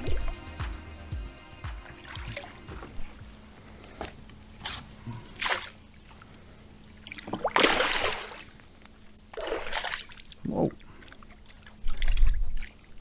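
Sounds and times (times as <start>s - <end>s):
water splashing: 1.8s - 3.2s, 4.6s - 5.9s, 7.0s - 13.0s.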